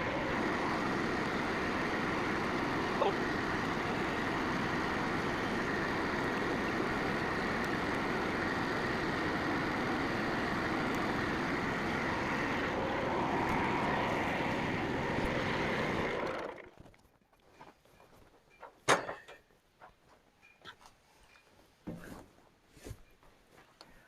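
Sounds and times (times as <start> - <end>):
gas engine running: 0.0 - 16.8.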